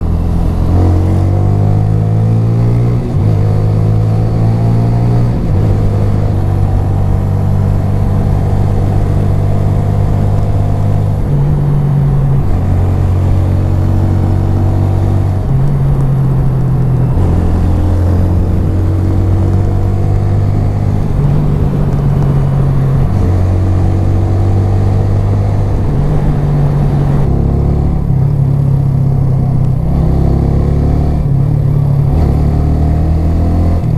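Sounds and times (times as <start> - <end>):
motorcycle engine running: 0.0 - 33.9.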